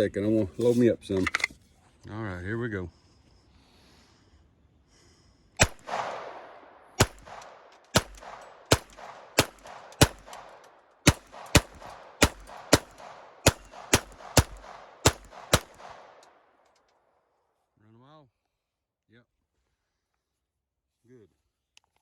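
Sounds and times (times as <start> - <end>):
pistol shots with echo: 5.6 - 16.4.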